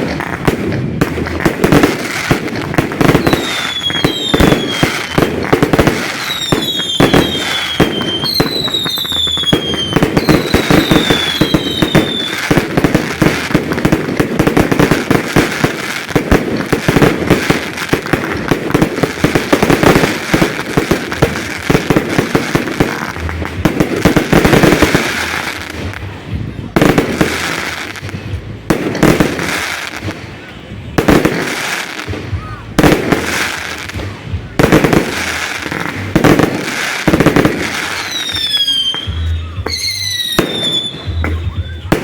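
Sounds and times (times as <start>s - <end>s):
fireworks bangs and crackling: 0.0s - 42.0s
whistling firework shells: 3.0s - 13.5s, 37.7s - 42.0s.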